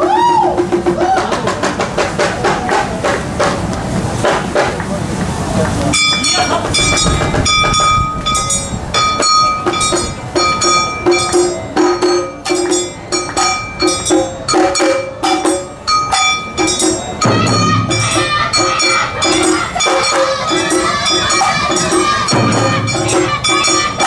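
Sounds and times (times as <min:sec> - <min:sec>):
deep drums: 0:00.0 - 0:24.0
drums beating: 0:00.0 - 0:24.0
high melody line: 0:05.5 - 0:24.0
struck metal bell: 0:06.0 - 0:24.0.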